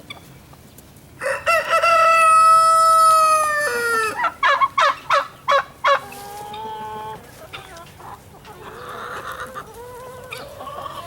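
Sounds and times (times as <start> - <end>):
rooster crowing: 1.2 - 5.0.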